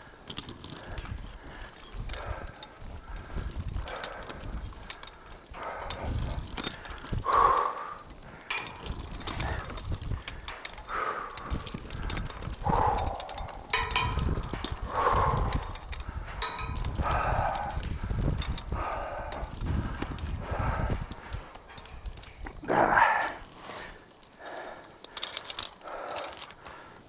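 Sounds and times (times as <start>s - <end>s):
knocks and clicks of climbing: 0.0s - 27.0s
man breathing heavily: 0.0s - 27.0s.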